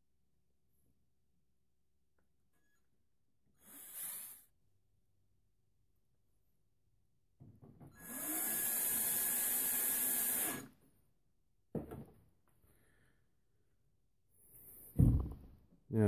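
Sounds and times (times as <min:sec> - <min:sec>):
power drill spinning: 0:07.9 - 0:10.8.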